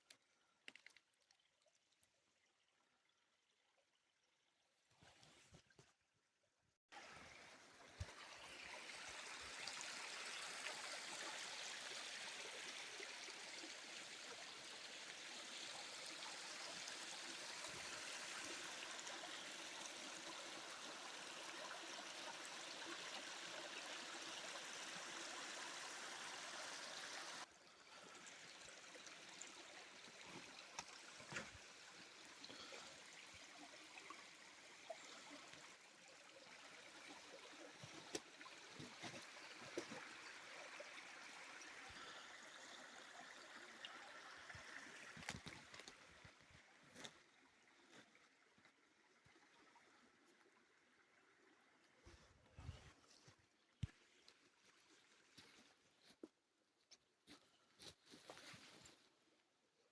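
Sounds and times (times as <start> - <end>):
stream rushing over stones: 7.0 - 46.4.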